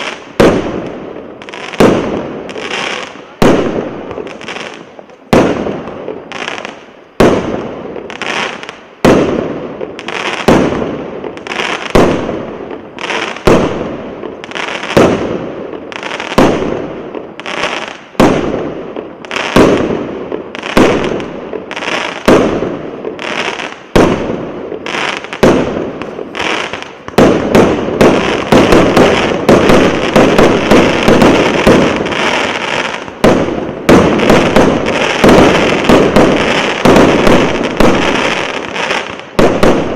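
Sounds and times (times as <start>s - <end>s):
firework battery bangs: 25.4s - 38.8s.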